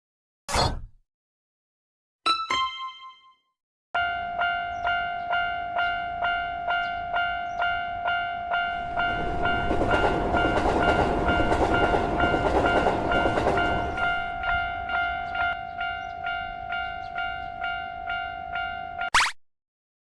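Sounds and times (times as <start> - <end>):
railroad crossing bell ringing: 2.5 - 3.4, 4.0 - 19.1
passing train rumble: 4.0 - 18.7.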